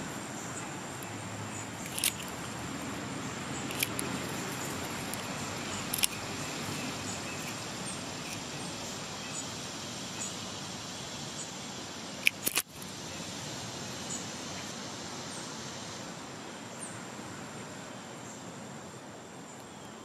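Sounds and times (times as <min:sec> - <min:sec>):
outdoor background hiss: 0:00.0 - 0:20.0
sharp clicks: 0:01.8 - 0:02.4, 0:03.6 - 0:06.2, 0:12.2 - 0:12.8.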